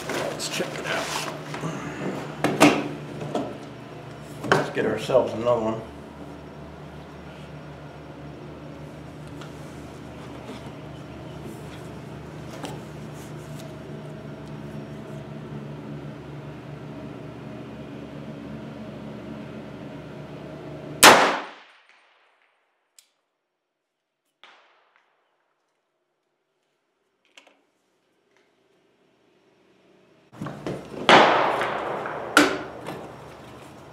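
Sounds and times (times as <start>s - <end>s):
background hum: 0.0s - 33.9s
rifle shot: 21.0s - 22.4s, 31.0s - 33.2s.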